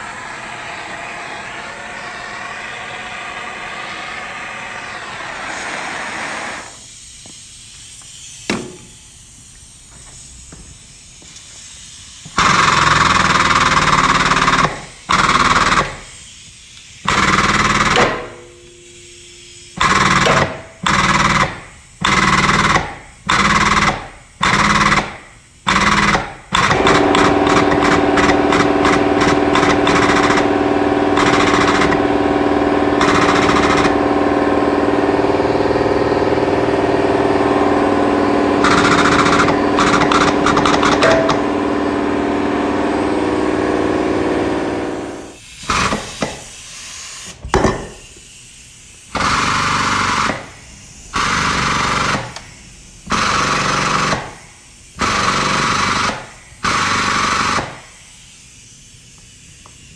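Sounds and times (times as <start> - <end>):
machine hum: 0.0 - 6.8, 17.1 - 22.6, 25.7 - 45.4
air impact wrench rattling: 12.3 - 16.3, 16.9 - 46.6, 49.1 - 50.6, 51.2 - 58.2.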